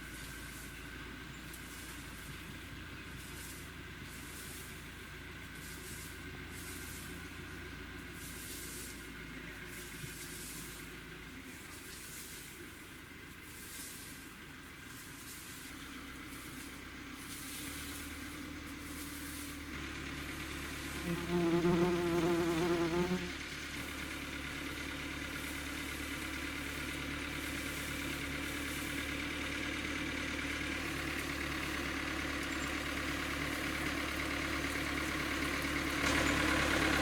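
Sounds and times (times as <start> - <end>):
pitched hum: 20.8 - 23.9
motor buzzing: 20.9 - 23.4.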